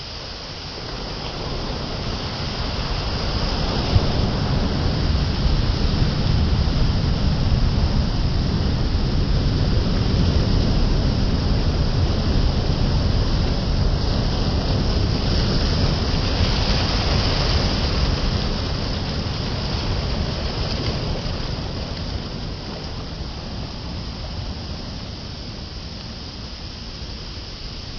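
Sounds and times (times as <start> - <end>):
sea surf: 0.0 - 27.9
wind on the shore: 0.0 - 27.9.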